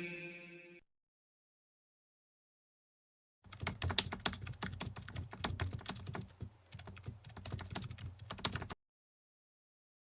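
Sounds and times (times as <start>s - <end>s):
typing on computer keyboard: 3.5s - 8.8s.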